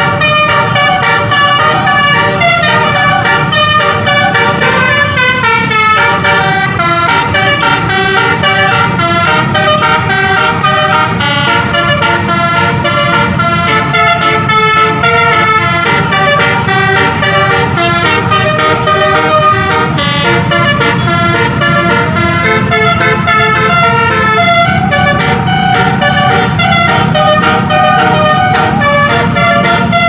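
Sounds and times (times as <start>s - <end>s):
engine and road rumble: 0.0s - 30.0s
multi-tone musical bus horn: 0.0s - 30.0s.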